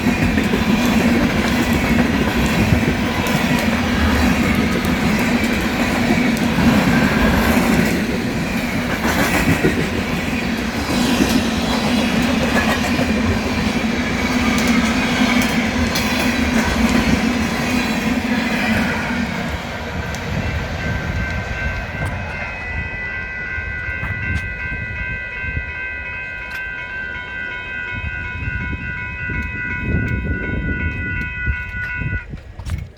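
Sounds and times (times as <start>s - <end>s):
crackling popping on rails: 0.0s - 10.6s
train wheels clicking over rails: 0.0s - 22.6s.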